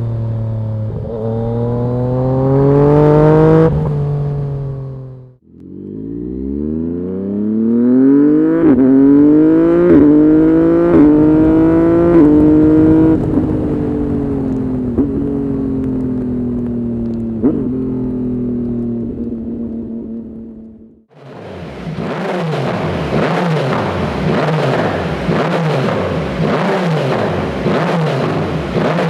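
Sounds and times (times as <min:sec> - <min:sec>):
motorcycle engine accelerating: 0:00.0 - 0:29.0
exhaust pops: 0:09.9 - 0:19.5.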